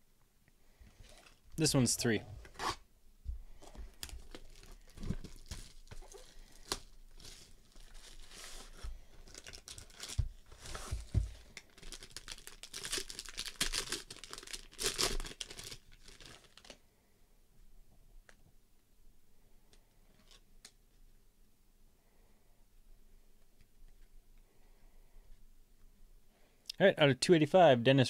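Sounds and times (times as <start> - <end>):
wrapper crinkling: 3.6 - 16.8
card pack wrapper tearing: 4.0 - 10.9, 11.6 - 16.8.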